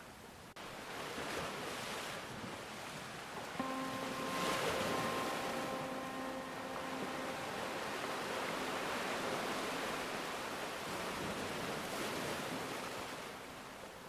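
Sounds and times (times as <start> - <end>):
sea waves washing on shore: 0.6 - 13.6.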